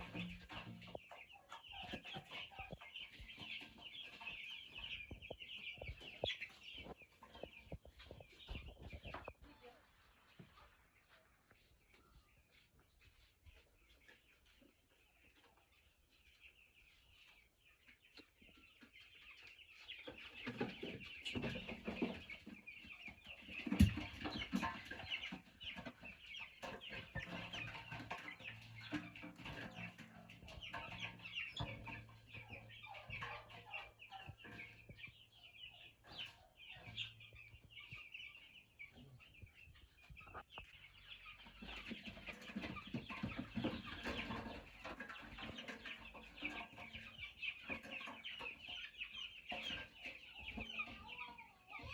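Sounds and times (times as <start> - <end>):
chicks peeping: 0.0 - 51.9
knocks and thumps: 23.6 - 25.1.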